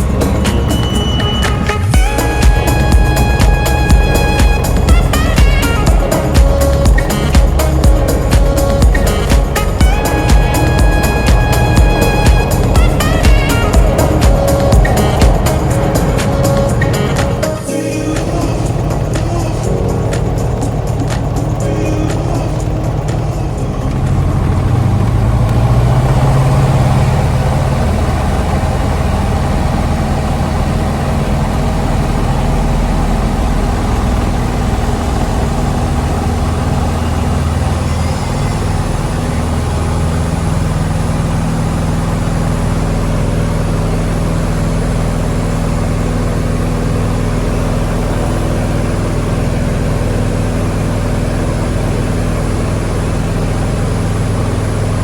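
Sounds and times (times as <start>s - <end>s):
light aircraft engine drone: 0.0s - 55.0s.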